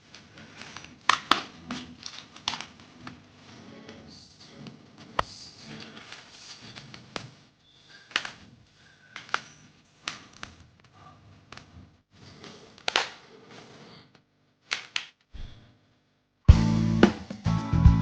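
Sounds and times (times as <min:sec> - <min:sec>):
guitar music: 0:16.5 - 0:18.0.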